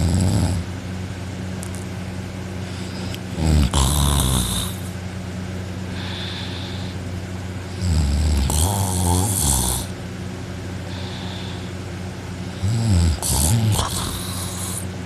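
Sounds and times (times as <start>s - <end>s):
person snoring loudly: 0.0s - 0.7s, 2.7s - 5.0s, 7.7s - 10.0s, 12.4s - 14.9s
faint breath: 5.9s - 7.0s, 10.8s - 11.8s.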